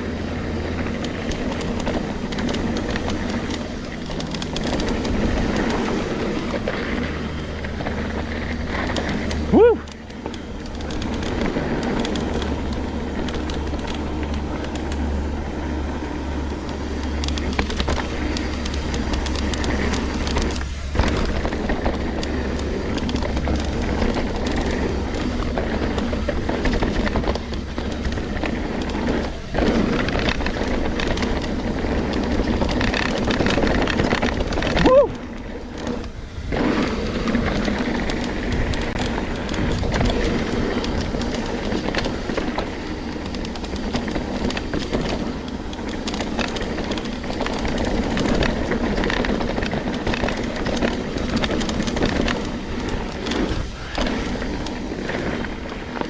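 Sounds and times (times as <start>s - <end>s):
bike tyres and drivetrain rattling: 0.0s - 56.0s
wind rushing: 10.1s - 25.6s
short rising tone: 15.3s - 22.7s.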